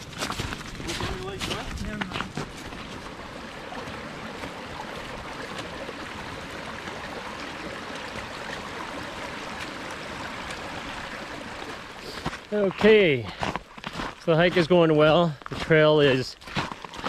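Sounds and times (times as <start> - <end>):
water rushing: 0.0 - 13.3.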